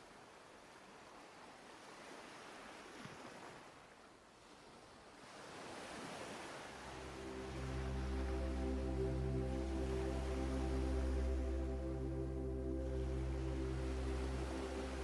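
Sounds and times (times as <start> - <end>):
ocean waves washing on shore: 0.0 - 15.0
low sustained music notes: 6.4 - 15.0.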